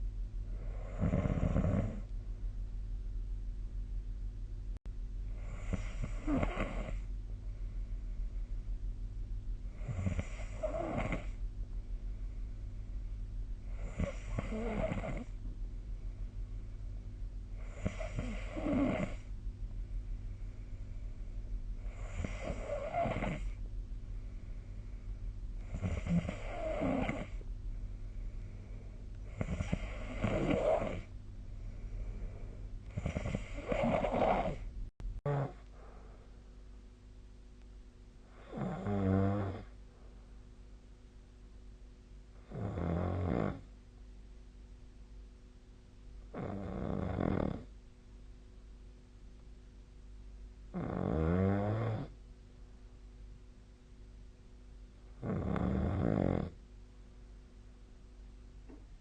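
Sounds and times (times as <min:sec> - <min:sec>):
steady low hum: 0:00.0 - 0:59.0
person snoring: 0:00.5 - 0:02.1, 0:05.4 - 0:07.1, 0:09.7 - 0:11.4, 0:13.7 - 0:15.4, 0:17.6 - 0:19.3, 0:21.8 - 0:23.6, 0:25.6 - 0:27.4, 0:29.3 - 0:31.1, 0:32.9 - 0:34.7, 0:35.3 - 0:35.6, 0:38.3 - 0:39.7, 0:50.7 - 0:52.1, 0:55.2 - 0:56.6.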